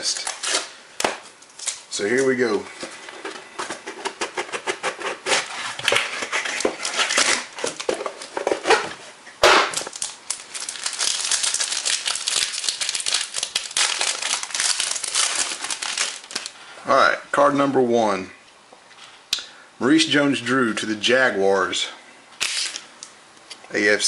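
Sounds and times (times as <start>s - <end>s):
packaging crinkling and tearing: 0.0s - 0.8s, 5.3s - 8.8s, 9.7s - 16.6s, 22.4s - 22.9s.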